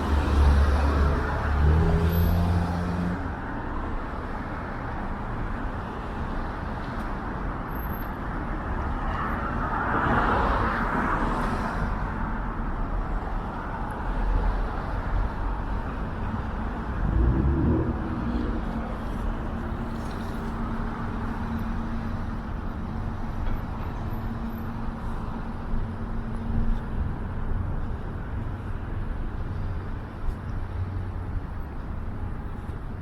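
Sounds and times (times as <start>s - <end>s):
cars passing: 0.0s - 33.0s
engine hum: 15.8s - 33.0s
vehicle rumbling past: 16.7s - 20.8s.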